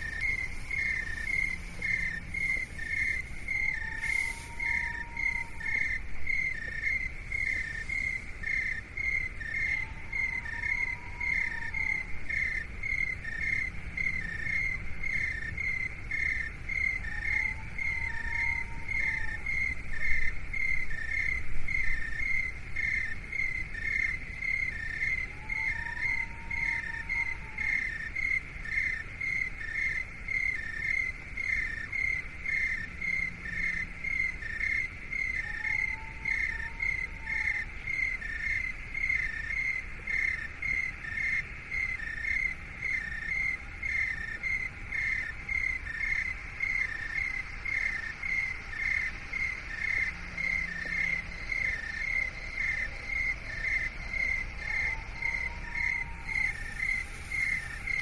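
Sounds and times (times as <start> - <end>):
faint whistle-like tone: 0.0 - 6.9, 25.0 - 27.9
crickets chirping: 0.0 - 58.0
low hiss: 0.0 - 58.0.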